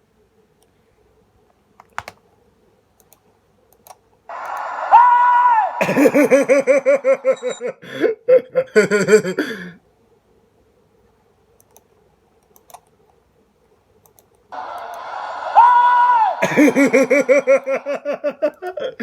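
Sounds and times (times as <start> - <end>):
rising-and-falling whistle: 4.3 - 7.7, 14.6 - 17.8.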